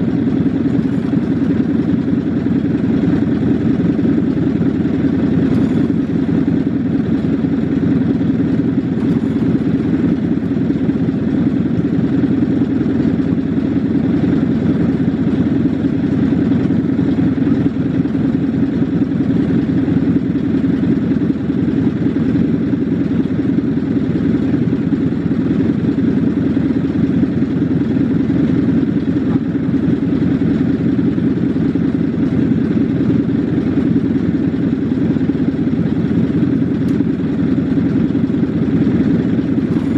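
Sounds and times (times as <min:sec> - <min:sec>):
lawn mower engine running: 0:00.0 - 0:39.9.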